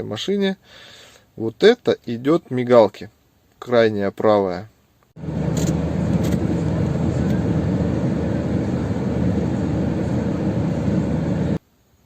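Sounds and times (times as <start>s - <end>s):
vehicle engine rumbling: 5.2s - 11.6s.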